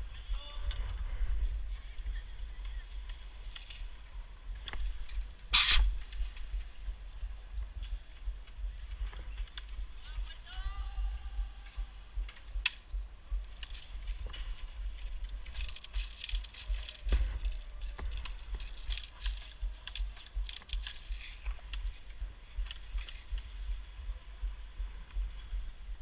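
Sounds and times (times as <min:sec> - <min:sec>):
low microphone rumble: 0:00.0 - 0:26.0
footsteps crunching: 0:12.5 - 0:24.2.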